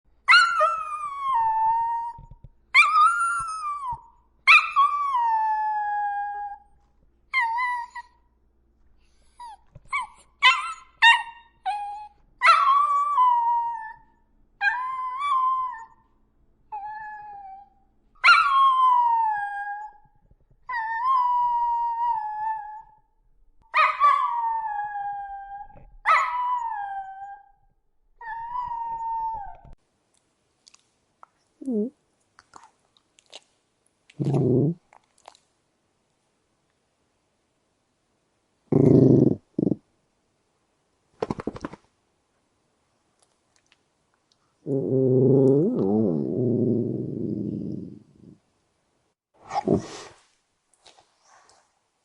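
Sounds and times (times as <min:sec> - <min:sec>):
dog yelping: 0:09.9 - 0:13.1.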